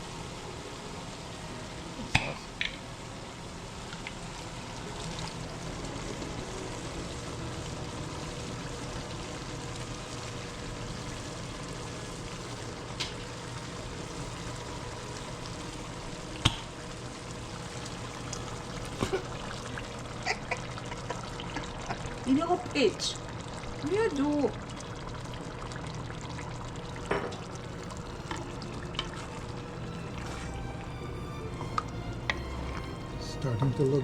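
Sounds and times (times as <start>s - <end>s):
steady sizzle: 0.0s - 34.0s
sauce pouring into a pan: 2.5s - 34.0s
utensil clicking against pot: 16.4s - 16.7s.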